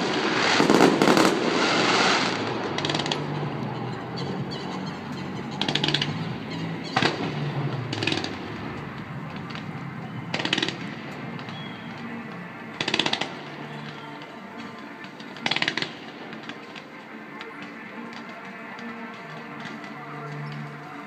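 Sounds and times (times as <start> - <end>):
loud firework burst: 0.0 - 3.2
rapid firework crackling: 0.0 - 3.4, 7.0 - 11.6, 12.8 - 13.6, 15.0 - 16.9.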